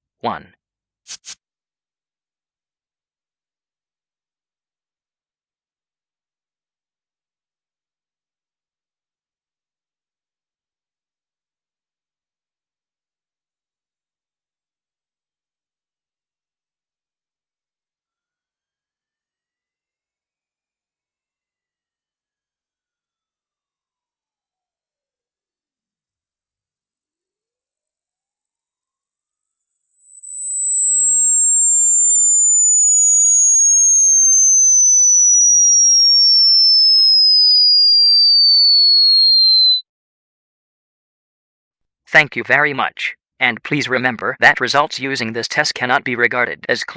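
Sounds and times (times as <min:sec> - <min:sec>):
descending sine test tone: 0:17.8 - 0:39.8.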